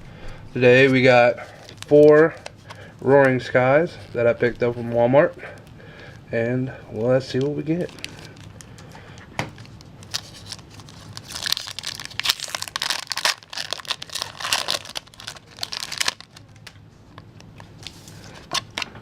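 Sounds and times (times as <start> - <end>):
foil wrapper tearing and crinkling: 9.6 - 18.9.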